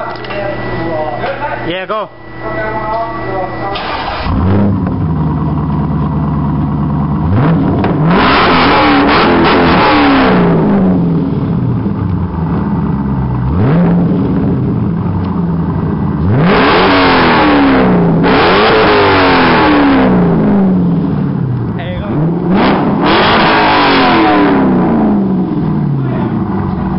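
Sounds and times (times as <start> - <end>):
car engine idling and revving: 0.0 - 26.9.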